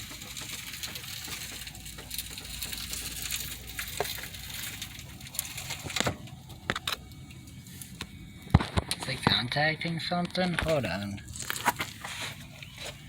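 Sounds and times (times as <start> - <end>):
suspension clicks and knocks: 0.0 - 7.0.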